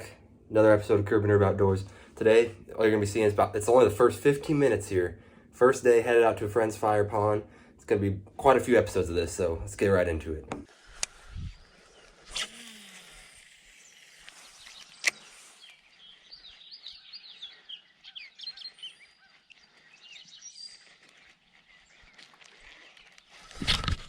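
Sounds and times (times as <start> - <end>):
small birds chirping: 10.7 - 23.6.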